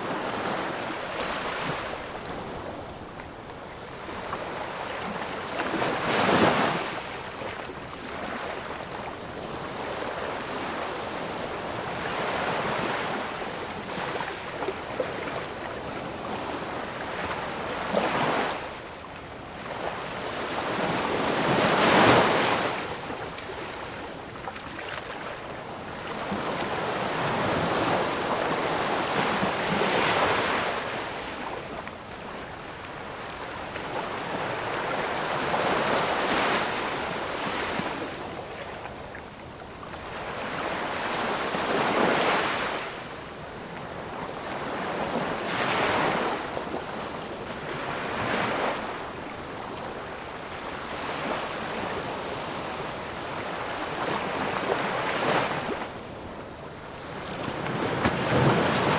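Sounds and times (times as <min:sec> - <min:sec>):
ocean waves breaking on shore: 0:19.4 - 0:39.2, 0:39.8 - 0:58.9.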